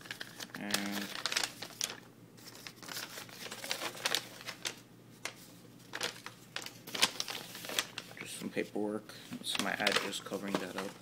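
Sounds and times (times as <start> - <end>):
paper rustling and crinkling: 0.0 - 8.4, 9.3 - 11.0.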